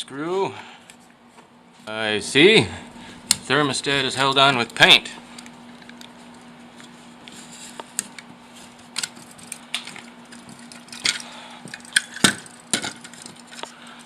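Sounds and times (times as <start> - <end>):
clicks and cracks on a wall: 8.9 - 14.0.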